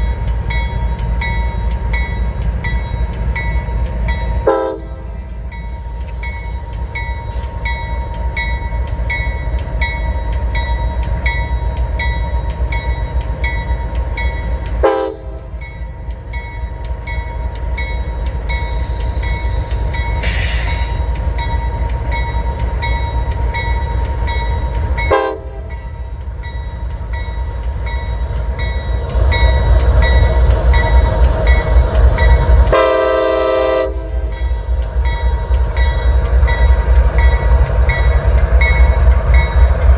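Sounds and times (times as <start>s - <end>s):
diesel locomotives running: 0.0s - 39.9s
train air horn: 4.4s - 5.1s, 14.8s - 15.5s, 20.2s - 21.0s, 25.1s - 25.8s, 32.7s - 34.4s.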